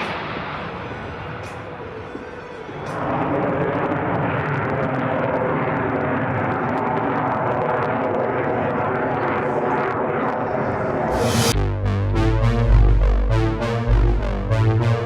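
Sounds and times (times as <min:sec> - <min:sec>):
jet engine roar: 0:00.0 - 0:11.6.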